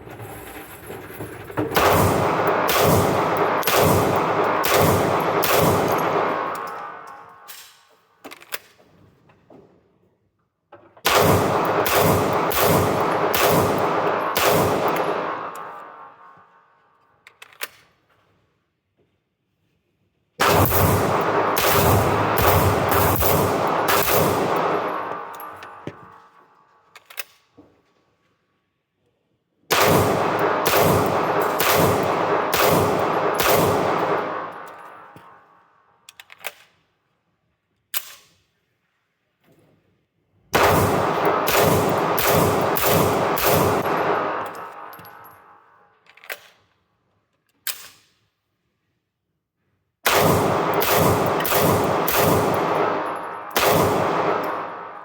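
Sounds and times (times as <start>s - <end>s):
pistol shots with echo: 1.7s - 7.6s, 11.0s - 16.4s, 20.4s - 26.4s, 29.7s - 35.5s, 40.6s - 45.7s, 50.0s - 55.0s.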